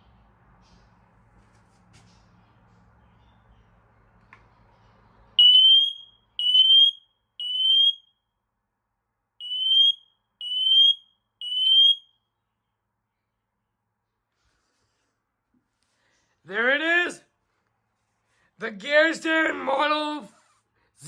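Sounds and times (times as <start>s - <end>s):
smoke alarm beeping: 5.4s - 8.1s, 9.4s - 12.1s.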